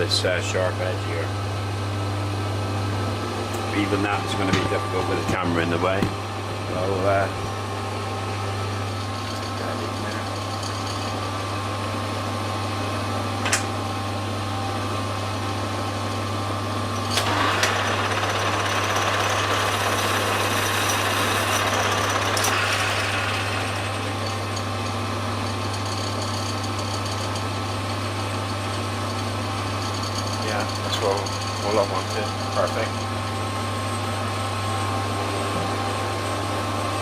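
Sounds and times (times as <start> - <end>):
metal lathe humming: 2.5 - 37.0
lathe tool cutting metal: 17.1 - 33.5.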